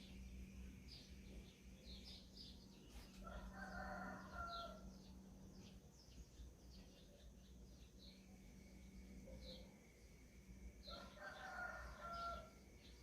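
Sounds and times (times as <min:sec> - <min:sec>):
small birds chirping: 0:00.0 - 0:13.0
faint rooster crowing: 0:02.9 - 0:05.3, 0:10.8 - 0:13.0.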